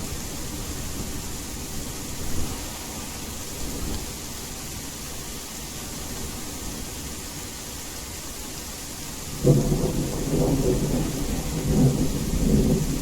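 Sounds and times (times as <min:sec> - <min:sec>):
steady rain hiss: 0:00.0 - 0:13.0
distant thunder rumbling: 0:09.4 - 0:13.0.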